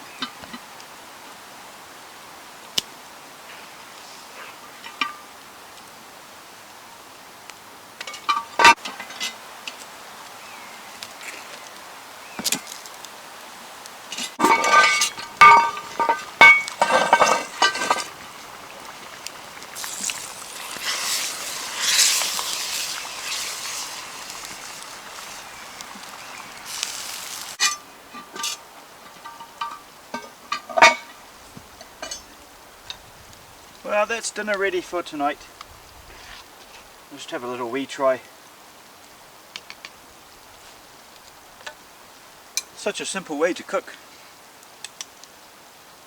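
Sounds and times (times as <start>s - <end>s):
metal clinking on cast iron pot: 8.0s - 9.4s, 14.4s - 18.6s, 19.7s - 31.2s, 31.8s - 32.3s
soft hissing: 9.7s - 27.8s.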